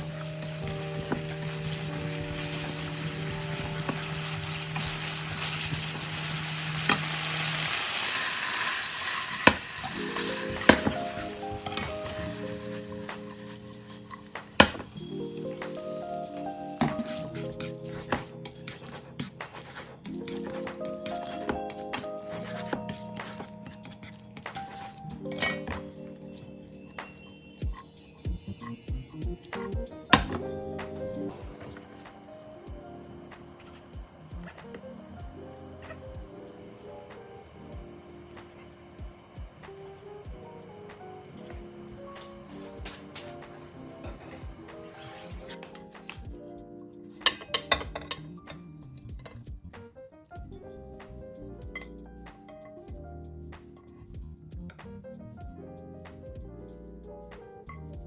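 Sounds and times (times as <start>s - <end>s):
food sizzling in a frying pan: 0.0s - 15.0s.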